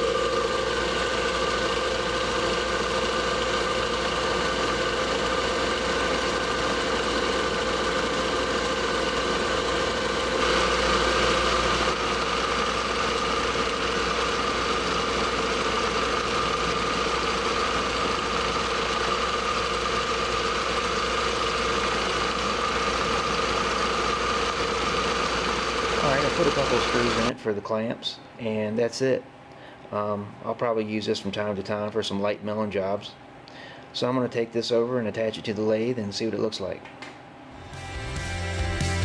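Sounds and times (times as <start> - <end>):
machine tool motor whining: 0.0 - 27.4.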